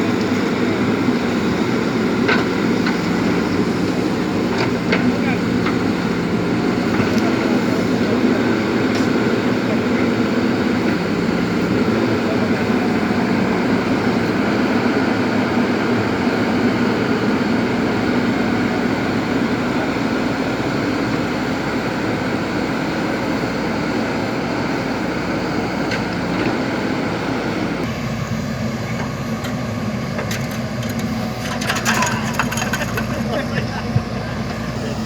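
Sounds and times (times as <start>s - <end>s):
diesel engine running: 0.0s - 35.0s
light clatter: 30.2s - 34.6s.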